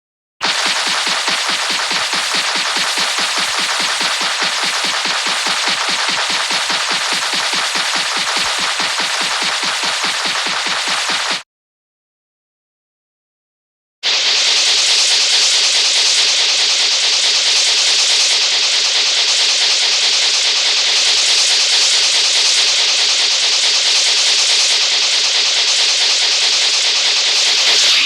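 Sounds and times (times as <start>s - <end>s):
loud rushing hiss: 0.4s - 11.4s, 26.9s - 28.0s.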